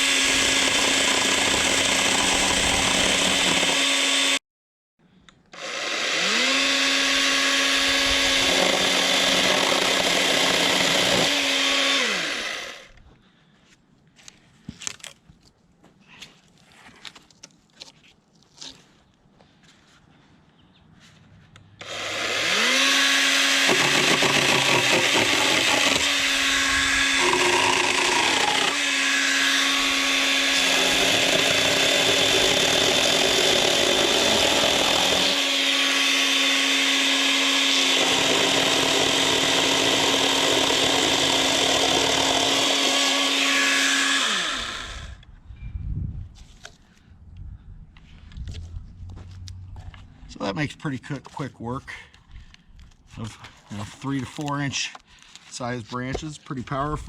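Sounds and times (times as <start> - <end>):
electric chainsaw cutting branch: 0.0 - 4.4, 5.5 - 13.0, 21.8 - 45.3.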